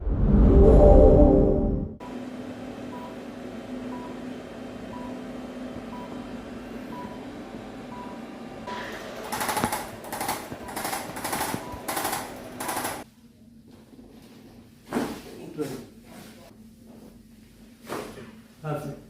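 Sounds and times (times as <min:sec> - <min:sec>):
rapid mechanical rattling: 0:09.0 - 0:13.0.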